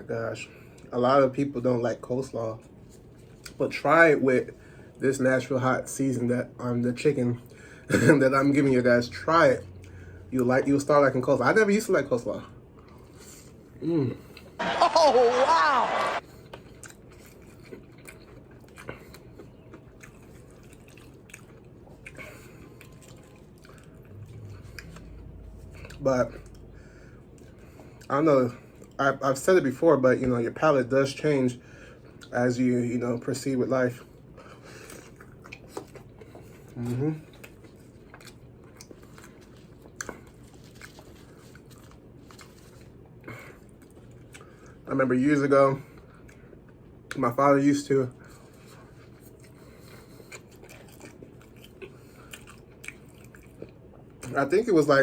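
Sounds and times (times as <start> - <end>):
food crunching: 14.2 - 26.7, 34.7 - 44.8, 48.2 - 54.5
chewing and mouth sounds: 16.2 - 29.0, 34.1 - 44.9, 45.9 - 47.4, 48.1 - 54.6.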